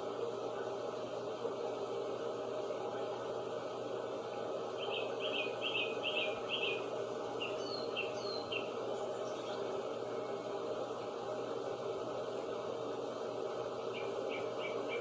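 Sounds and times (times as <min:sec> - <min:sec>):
steady background hiss: 0:00.0 - 0:15.0
songbird chirping and whistling: 0:04.8 - 0:06.8, 0:07.4 - 0:09.6.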